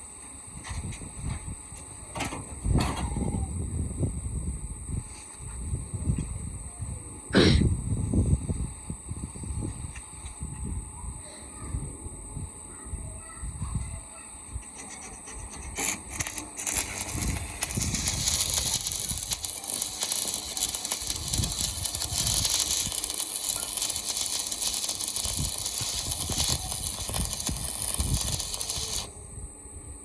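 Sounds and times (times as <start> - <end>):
arc welding crackling hiss: 14.8 - 29.2
welder clicks: 15.6 - 29.1.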